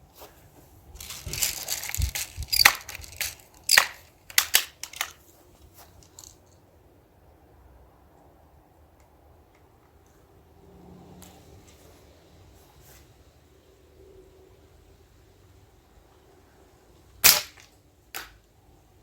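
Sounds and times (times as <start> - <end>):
air rifle rustling: 0.0 - 6.6, 17.2 - 18.4
air rifle sharp clacks: 1.0 - 5.2.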